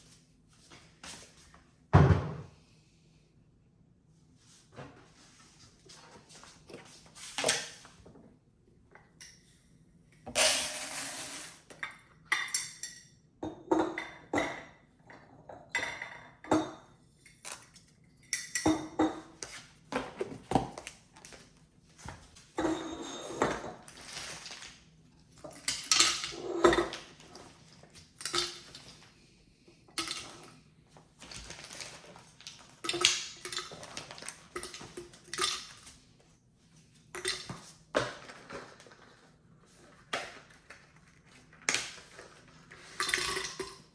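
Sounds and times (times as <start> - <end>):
hard items clattering: 30.0 - 35.9.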